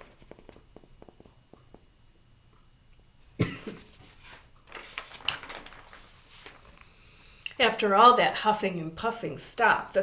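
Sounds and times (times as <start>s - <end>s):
person coughing: 3.4s - 3.9s.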